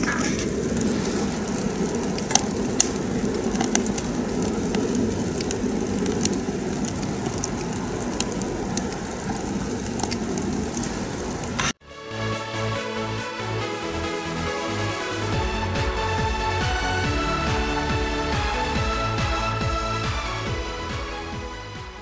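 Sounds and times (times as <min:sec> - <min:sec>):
fire crackling and popping: 0:00.0 - 0:11.8, 0:13.8 - 0:22.0
fire draft rushing: 0:00.0 - 0:11.8.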